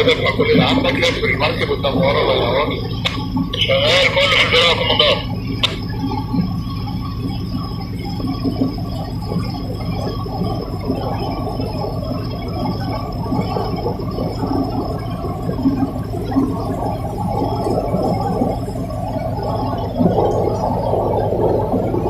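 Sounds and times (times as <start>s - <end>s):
boat engines rumbling: 0.0s - 22.0s.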